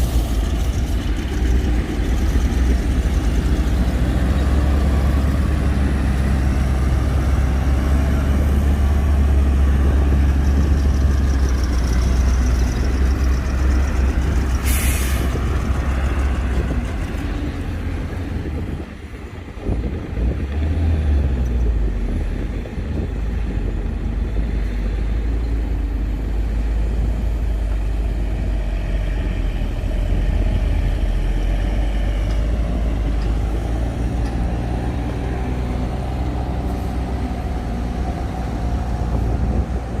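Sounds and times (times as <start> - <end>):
heavy diesel machinery engine: 0.0 - 40.0
hissing air burst: 14.6 - 15.4.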